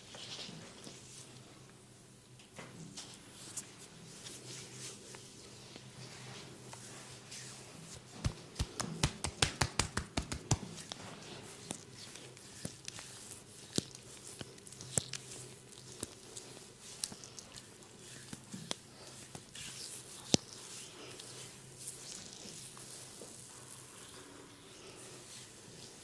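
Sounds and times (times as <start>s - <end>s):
hands slapping body: 8.2s - 10.8s.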